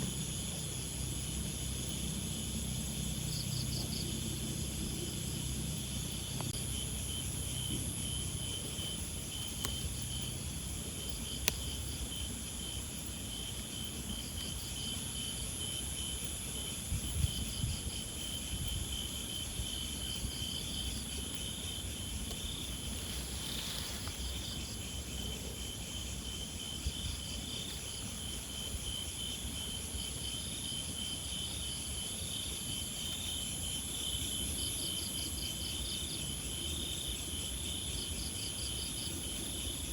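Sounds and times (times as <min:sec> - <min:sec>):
low pulsing insect chirp: 0:00.0 - 0:39.9
low rustle: 0:22.3 - 0:24.9.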